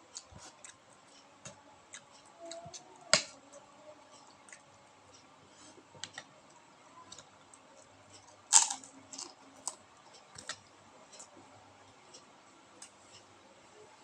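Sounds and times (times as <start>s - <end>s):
food crunching while eating: 8.5s - 9.8s.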